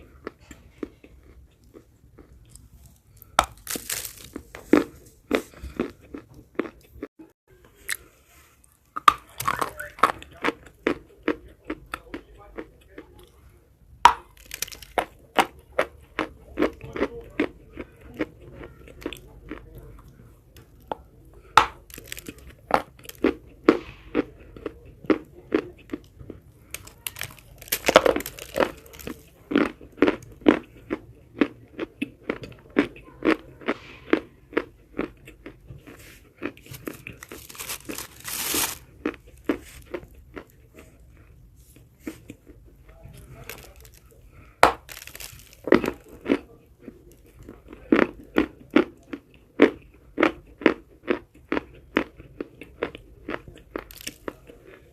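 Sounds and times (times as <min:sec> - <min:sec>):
chewing dry chalk crunches: 0:00.0 - 0:54.9.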